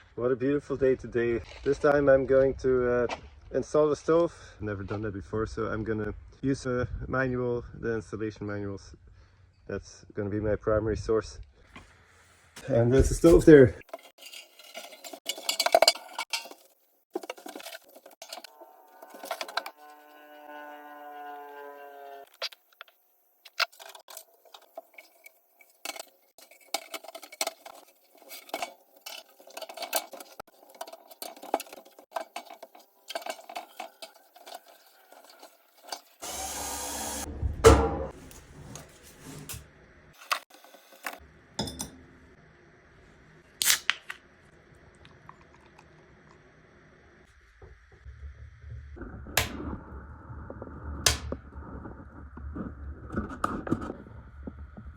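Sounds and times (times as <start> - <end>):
tools and metal parts clattering: 13.1 - 19.8, 23.5 - 36.2.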